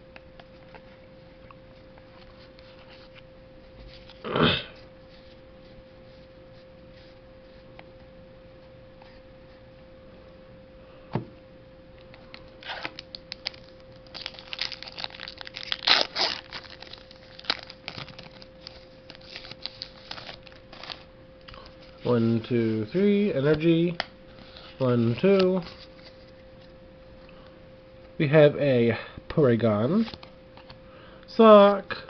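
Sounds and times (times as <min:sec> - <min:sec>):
faint steady hum: 0:00.0 - 0:32.0
foil wrapper tearing and crinkling: 0:12.6 - 0:21.1.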